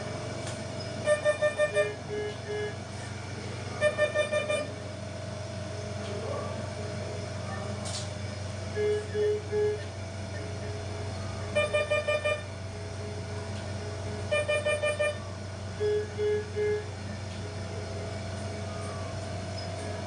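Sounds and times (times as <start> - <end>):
steady machine hum: 0.0 - 20.0
medical alarm beeping: 0.8 - 2.8, 3.8 - 4.7, 11.5 - 12.5, 14.3 - 15.2.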